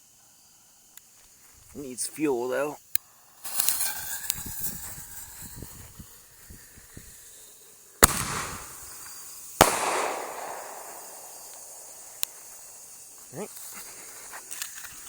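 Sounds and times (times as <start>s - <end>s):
firework shell bursting: 3.2s - 13.2s
firework launch bang: 3.4s - 6.2s, 8.0s - 12.8s.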